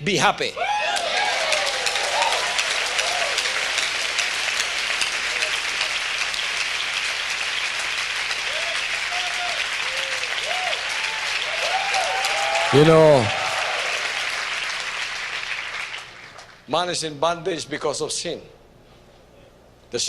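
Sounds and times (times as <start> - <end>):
congregation applauding: 0.9 - 16.5
voices calling out: 12.7 - 13.4.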